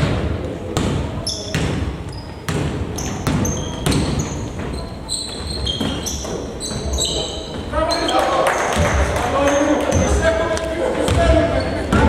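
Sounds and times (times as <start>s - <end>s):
sneakers squeaking on floor: 0.8s - 10.3s, 11.0s - 12.0s
basketball bouncing on floor: 2.5s - 4.8s.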